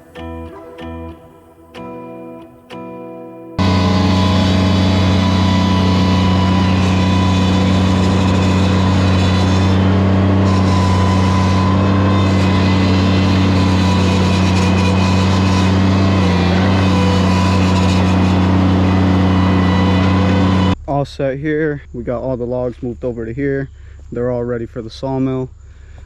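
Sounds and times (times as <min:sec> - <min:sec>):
machine engine running steadily: 0:03.6 - 0:20.8.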